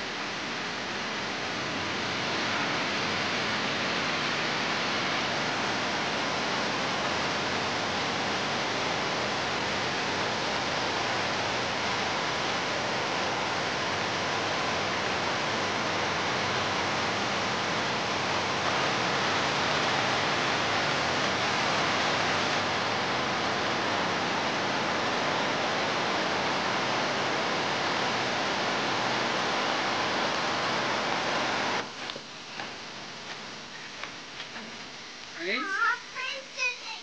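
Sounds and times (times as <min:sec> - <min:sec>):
waterfall rushing: 0:00.0 - 0:31.8.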